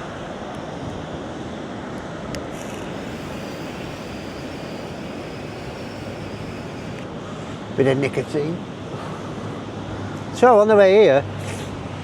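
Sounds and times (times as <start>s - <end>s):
sea surf: 0.0s - 8.0s.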